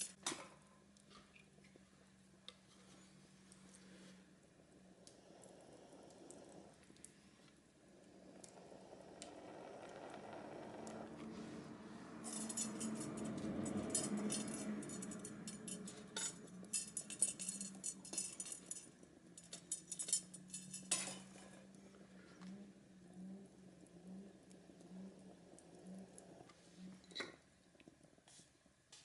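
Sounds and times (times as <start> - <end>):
low steady hum: 0.0 - 28.2
fire crackling: 2.0 - 13.2, 14.0 - 28.4
fire tools clinking on wood: 12.3 - 21.6.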